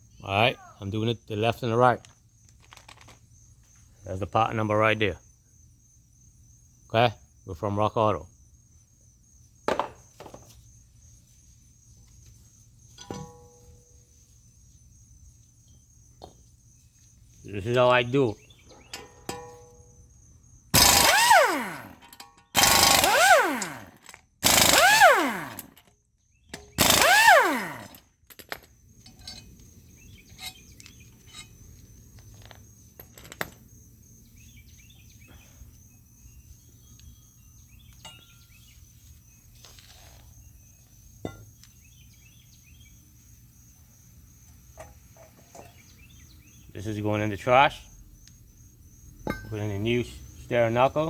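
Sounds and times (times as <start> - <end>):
impact wrench hammering: 20.8 - 25.8, 26.6 - 28.0, 49.2 - 49.6
metal parts clinking: 20.8 - 25.9, 26.5 - 29.6, 30.2 - 33.6, 49.2 - 49.8.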